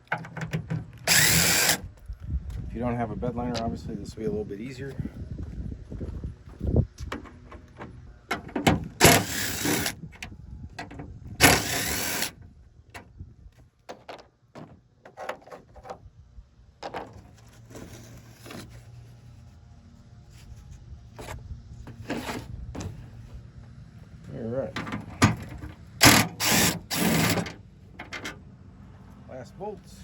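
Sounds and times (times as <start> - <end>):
power driver whirring: 1.0 - 1.9, 8.9 - 10.1, 11.4 - 12.4, 25.3 - 27.6.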